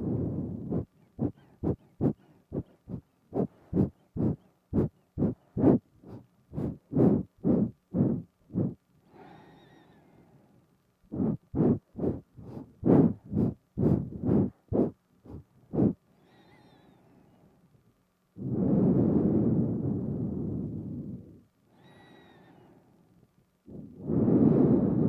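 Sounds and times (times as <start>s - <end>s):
sniffing nose breaths: 0.0s - 10.0s, 11.1s - 16.5s
faint breathy hiss: 0.0s - 25.0s.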